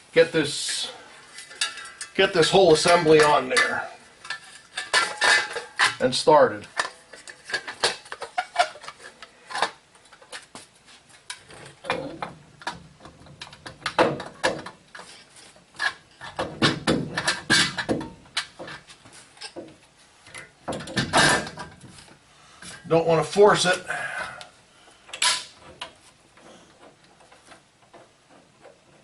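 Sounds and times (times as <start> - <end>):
metal hub knocking and scraping: 0.5 - 10.6, 11.2 - 23.4.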